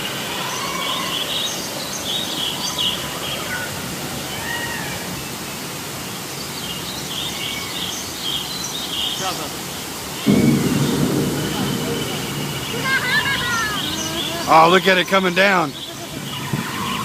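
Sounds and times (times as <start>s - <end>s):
steady background hiss: 0.0s - 17.0s
high animal calls and chirps: 10.1s - 17.0s.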